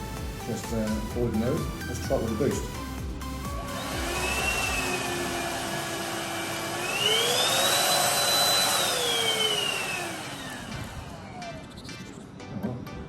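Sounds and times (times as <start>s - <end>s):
cordless vacuum motor whine: 3.3s - 11.9s.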